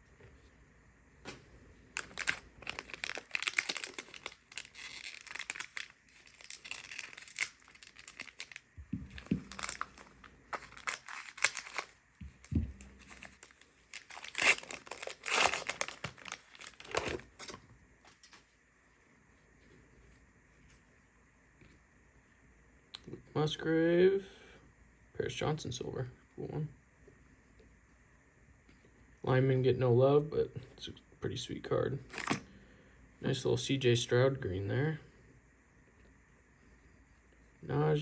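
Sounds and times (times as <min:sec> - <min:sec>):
wrapper crinkling: 0:01.9 - 0:18.4, 0:32.1 - 0:32.4.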